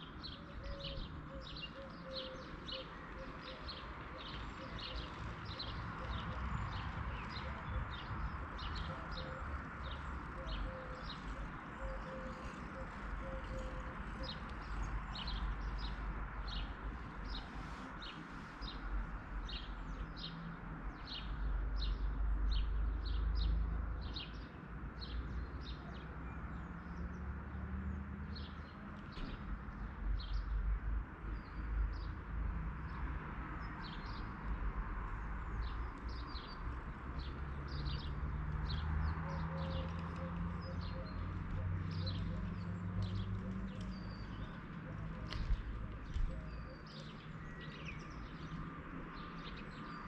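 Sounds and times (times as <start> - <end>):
small birds chirping: 35.2 - 50.0.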